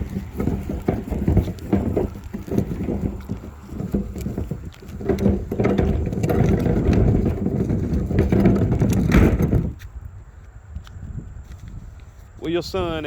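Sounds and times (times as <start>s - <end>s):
plastic garbage can rolling: 0.0s - 9.8s.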